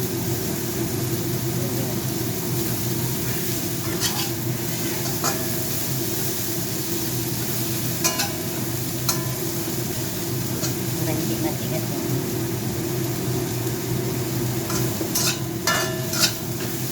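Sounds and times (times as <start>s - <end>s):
food sizzling in a pan: 0.0s - 16.9s
spatula scraping a pan: 3.8s - 5.7s, 8.0s - 9.5s, 10.5s - 10.9s, 14.6s - 16.9s
steady hum: 7.4s - 16.9s.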